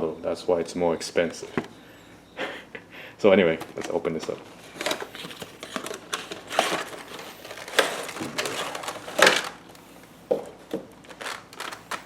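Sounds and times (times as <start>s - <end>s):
packaging rustling and scraping: 3.5s - 10.0s, 10.9s - 12.0s.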